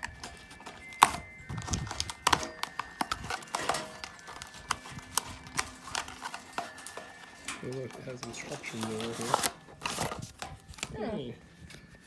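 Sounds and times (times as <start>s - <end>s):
camp stove parts clicking: 0.0s - 12.0s
packaging rustling: 0.0s - 12.0s.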